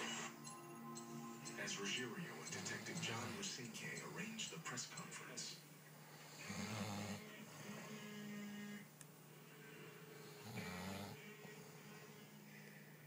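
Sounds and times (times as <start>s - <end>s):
steady low hum: 0.0s - 13.0s
person snoring: 2.3s - 4.2s, 6.0s - 8.9s, 10.1s - 12.8s.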